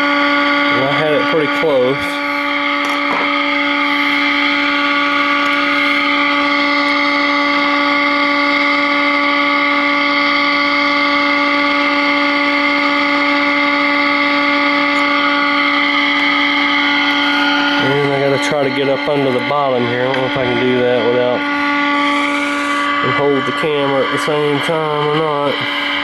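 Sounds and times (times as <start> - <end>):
steady tone from radio speaker: 0.0 - 26.0.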